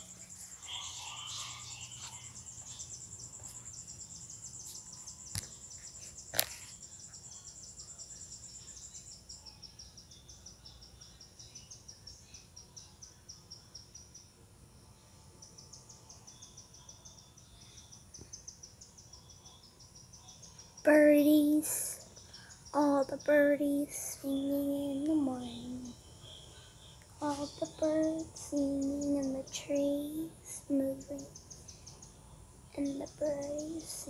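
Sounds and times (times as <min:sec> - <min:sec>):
insect high fast trill: 0:00.0 - 0:09.5
insect high chirp: 0:00.0 - 0:34.0.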